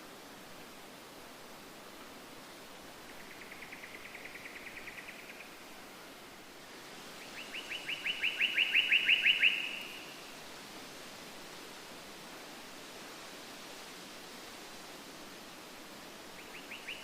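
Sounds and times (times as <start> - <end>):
steady hiss: 0.0 - 17.0
bird trills: 7.4 - 10.0.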